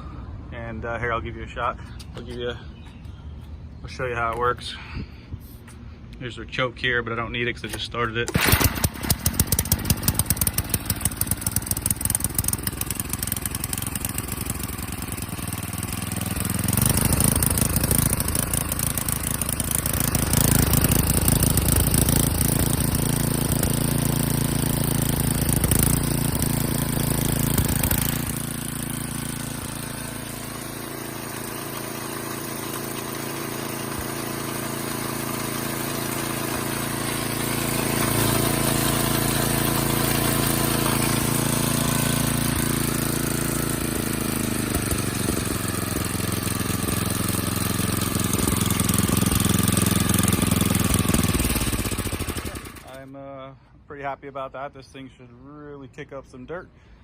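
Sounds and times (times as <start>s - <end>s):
small engine running: 8.3s - 53.1s.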